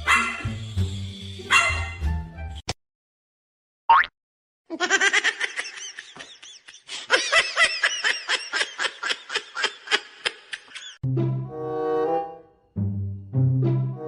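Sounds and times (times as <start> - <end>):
high-pitched laughter: 4.7 - 11.0.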